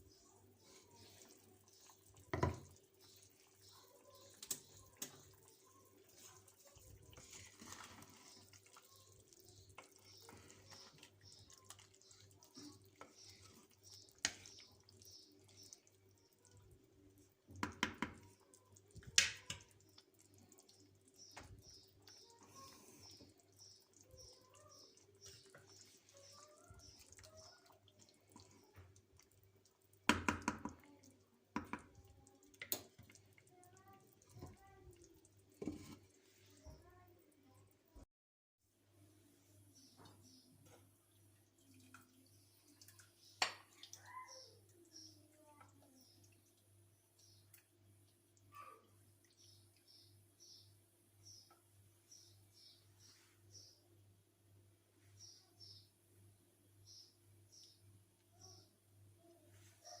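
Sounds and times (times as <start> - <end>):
water dripping and trickling: 0.0 - 38.0, 39.8 - 53.1.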